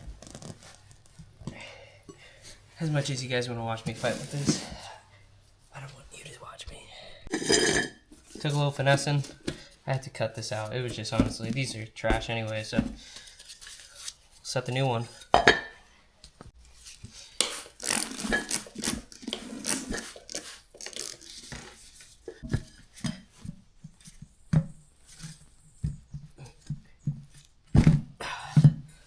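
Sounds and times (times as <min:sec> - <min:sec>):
metal tools clinking on wheel rim: 0:07.3 - 0:08.0.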